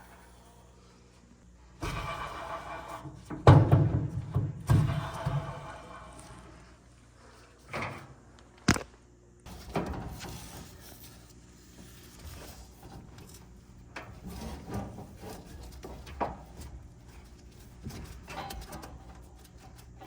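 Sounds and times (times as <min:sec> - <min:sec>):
parts knocking and scraping: 0:01.8 - 0:06.6.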